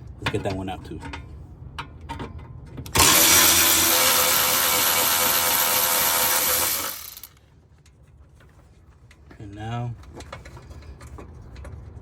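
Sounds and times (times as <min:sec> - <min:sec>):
power tool running: 0:03.0 - 0:07.3.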